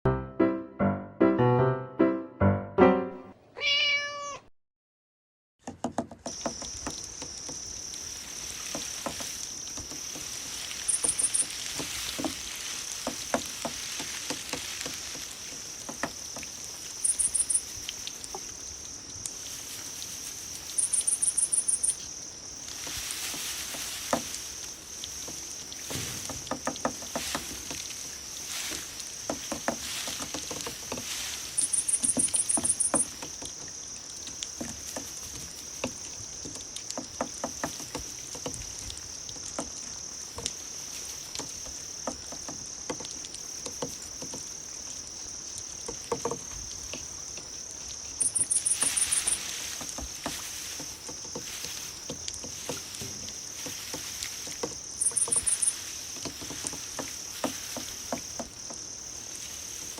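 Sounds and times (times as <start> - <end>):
crickets trilling: 6.0 - 59.9
loud pulsed cricket chirp: 6.4 - 11.6, 15.5 - 23.2, 31.2 - 36.4, 46.6 - 49.8, 50.5 - 59.9.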